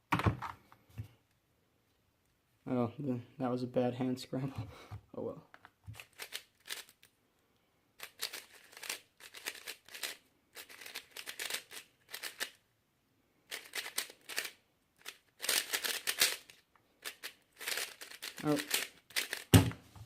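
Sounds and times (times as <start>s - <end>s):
puzzle cube clicking and rattling: 5.9s - 7.1s, 8.0s - 12.6s, 13.5s - 19.5s.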